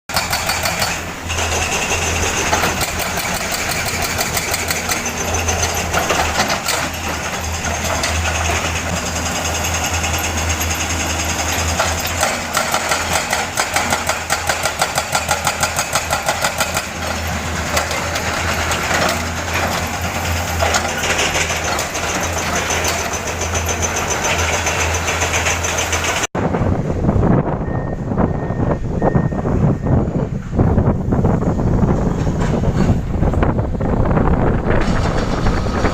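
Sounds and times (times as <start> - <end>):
hydraulic breaker hammering rock: 0.1 - 26.3
diesel engine running: 0.1 - 35.9.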